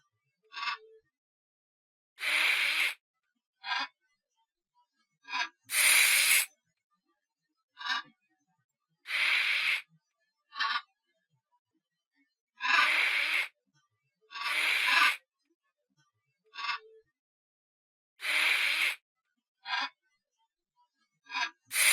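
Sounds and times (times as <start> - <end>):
tarantula hissing: 2.2 - 3.0, 5.7 - 6.5, 9.1 - 9.8, 12.8 - 13.5, 14.5 - 15.2, 18.2 - 19.0.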